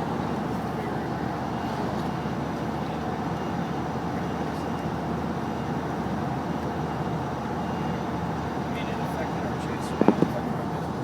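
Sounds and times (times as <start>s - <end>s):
van engine idling: 0.0s - 11.0s.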